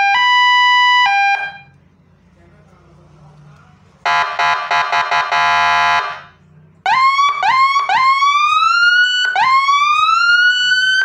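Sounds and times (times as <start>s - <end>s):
harsh buzzy horn tone: 4.1s - 6.3s
rising siren whoops: 6.9s - 11.0s.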